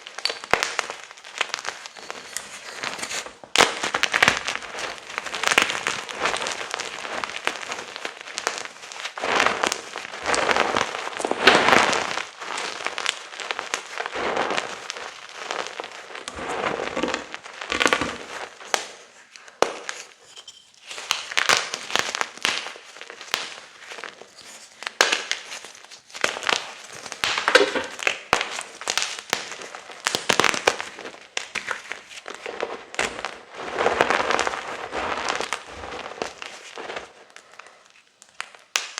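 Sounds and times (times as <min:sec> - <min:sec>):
chalk crunching and crackling: 0:00.0 - 0:38.9.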